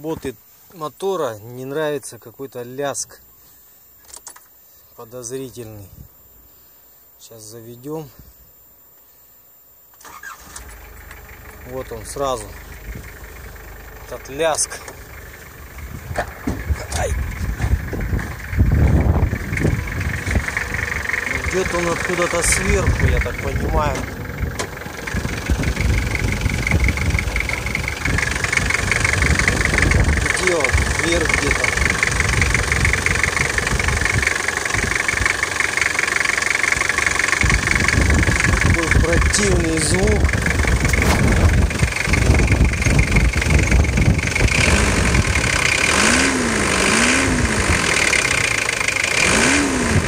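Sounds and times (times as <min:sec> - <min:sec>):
diesel engine idling roughly: 0:10.1 - 0:50.0
metallic clanking rattle: 0:10.6 - 0:44.5
metallic engine clatter: 0:10.9 - 0:50.0.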